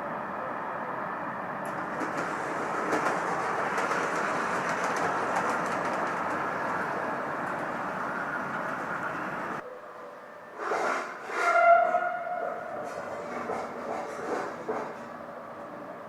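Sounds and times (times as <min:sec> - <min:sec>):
train wheels rolling on rail: 0:01.5 - 0:09.6, 0:10.6 - 0:15.9
clicks over rail joints: 0:01.6 - 0:07.7.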